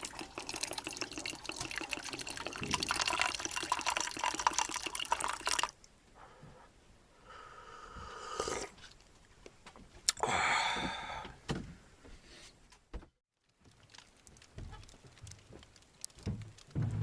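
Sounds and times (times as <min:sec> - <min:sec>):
tea pouring into a mug: 0:00.0 - 0:05.8.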